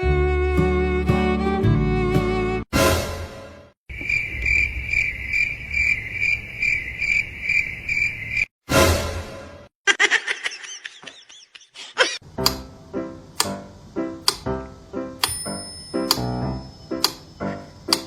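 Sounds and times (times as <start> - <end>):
cricket chirping: 3.9 - 8.5.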